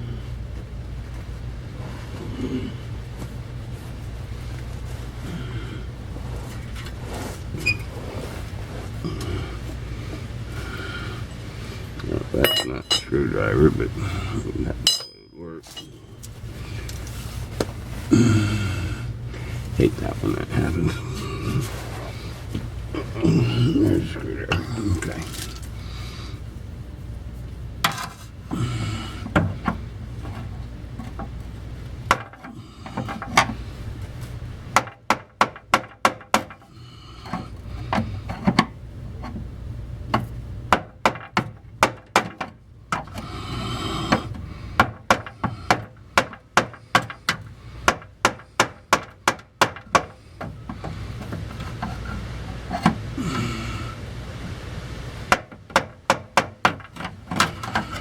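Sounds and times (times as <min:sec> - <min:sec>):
hammer tapping on screwdriver: 0:44.1 - 0:50.9.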